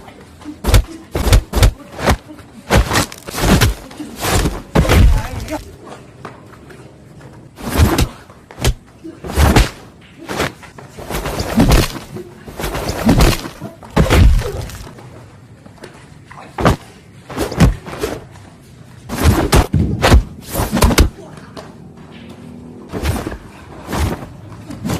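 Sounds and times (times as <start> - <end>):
whooshing swings: 0.0 - 5.8, 7.5 - 15.0, 16.6 - 18.4, 19.0 - 21.3, 22.5 - 24.9
punch and kick impacts: 0.6 - 5.6, 7.6 - 10.5, 11.1 - 14.9, 16.6 - 17.9, 19.1 - 21.2.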